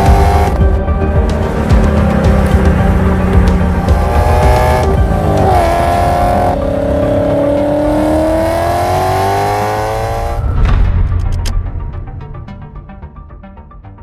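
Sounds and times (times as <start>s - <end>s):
car engine revving: 0.0s - 10.6s.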